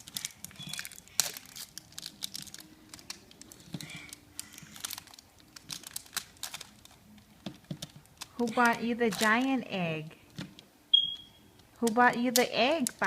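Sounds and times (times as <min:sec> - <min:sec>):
wrapper crinkling and tearing: 0:00.0 - 0:09.6.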